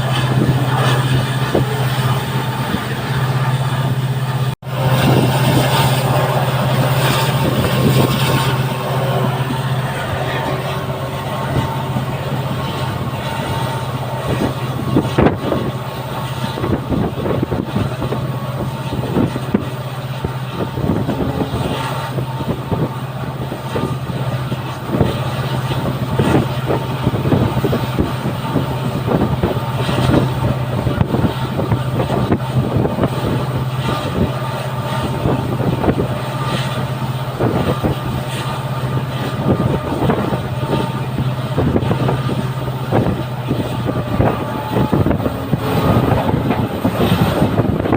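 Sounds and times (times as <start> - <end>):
diesel locomotive engine drone: 0.0 - 47.9.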